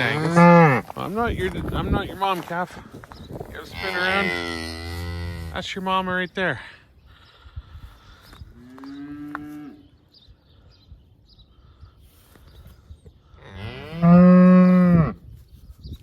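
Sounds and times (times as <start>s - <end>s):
cattle mooing: 0.0s - 0.8s, 3.6s - 5.6s, 13.4s - 15.2s.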